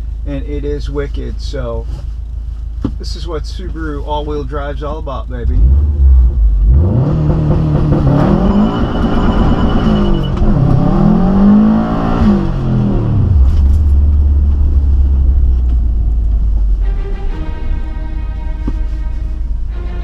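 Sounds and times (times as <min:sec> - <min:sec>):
car engine accelerating hard: 0:05.4 - 0:20.0.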